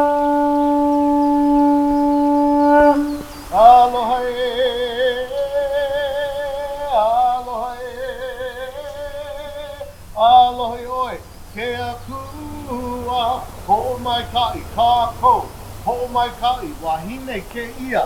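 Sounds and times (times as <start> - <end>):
conch shell blasts: 0.0 - 4.9.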